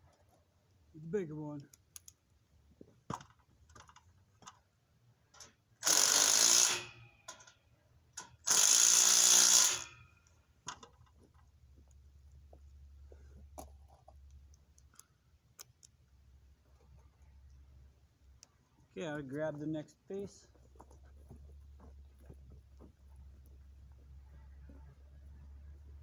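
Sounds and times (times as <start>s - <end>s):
power drill running: 5.8s - 7.2s, 8.4s - 10.1s.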